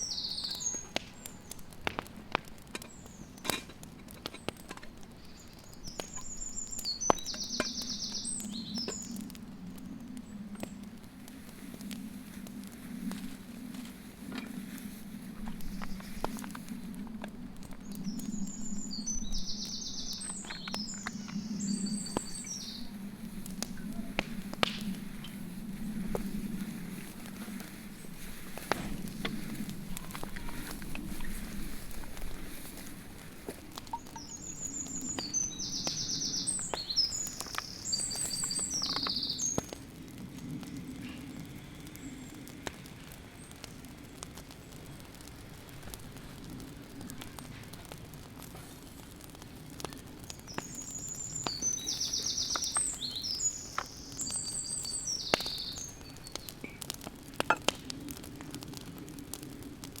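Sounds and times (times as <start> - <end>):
songbird singing trills: 0.0 - 1.4, 5.2 - 9.3, 17.7 - 33.0, 33.8 - 39.8, 50.4 - 56.5
faint clicks: 0.3 - 19.2, 20.1 - 60.0.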